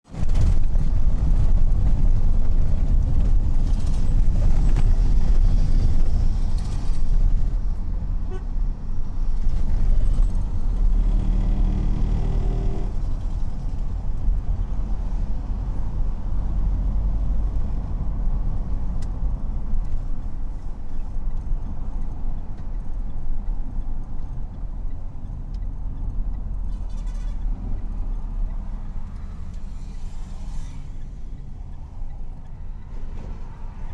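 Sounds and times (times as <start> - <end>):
traffic rumble: 0.0 - 33.9
vehicle horn: 8.2 - 8.6, 12.3 - 12.9.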